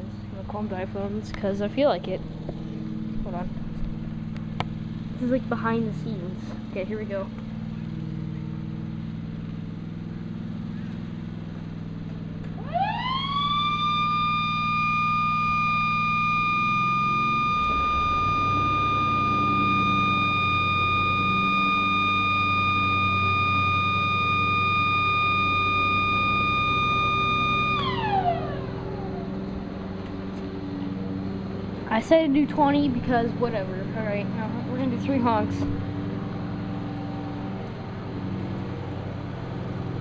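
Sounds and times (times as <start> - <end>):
warning siren: 12.5 - 40.0.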